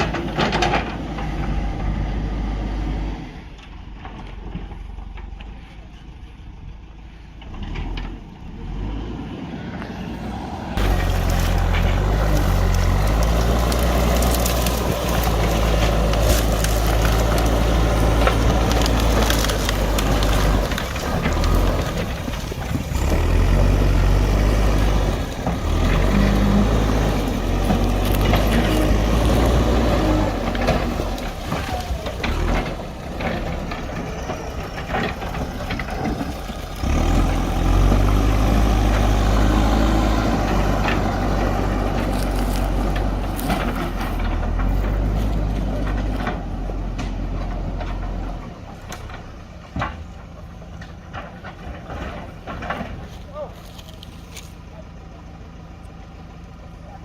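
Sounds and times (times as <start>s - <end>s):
diesel engine under load: 0.0s - 57.0s
cracks and crunches of roots: 10.8s - 55.0s.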